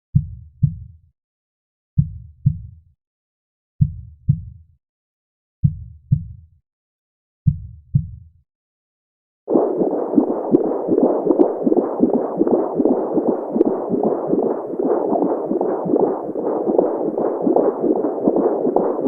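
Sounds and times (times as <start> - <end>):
heartbeat thumps: 0.1 - 0.9, 2.0 - 2.8, 3.8 - 4.6, 5.6 - 6.4, 7.4 - 8.2, 9.5 - 19.0.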